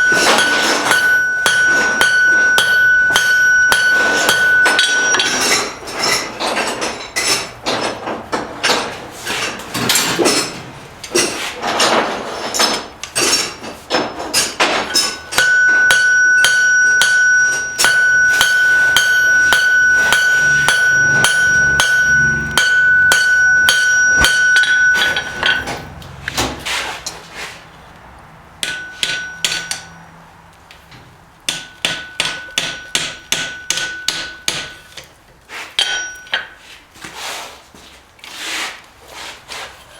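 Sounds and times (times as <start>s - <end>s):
hammer striking steel on anvil: 0.0s - 5.8s, 13.3s - 26.0s, 28.6s - 30.1s, 31.5s - 35.1s, 35.8s - 36.5s
anvil ringing: 0.0s - 6.4s, 14.7s - 26.0s, 28.6s - 30.2s, 31.5s - 34.9s, 35.8s - 36.5s.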